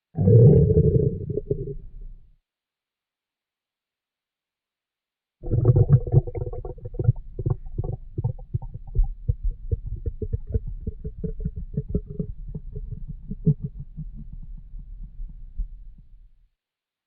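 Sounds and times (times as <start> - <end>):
stomach growling and gurgling: 0.2 - 2.0, 5.4 - 16.2.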